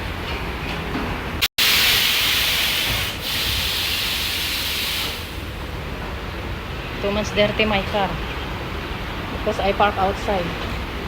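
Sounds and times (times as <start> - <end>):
compressed air hissing: 1.6 - 5.6.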